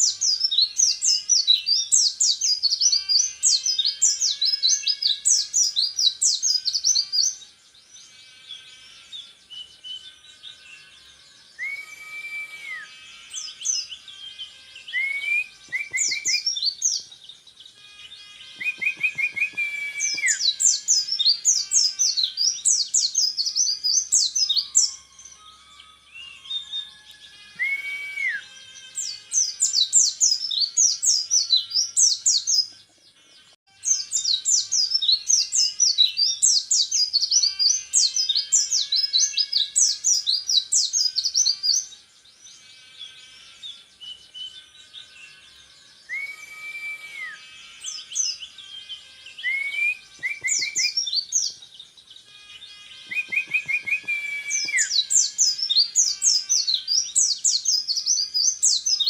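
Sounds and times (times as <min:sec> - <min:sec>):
slower whistled bird notes: 0:11.5 - 0:14.1, 0:14.8 - 0:17.1, 0:18.6 - 0:32.6, 0:46.0 - 0:48.7, 0:49.3 - 0:51.5, 0:53.1 - 0:59.0.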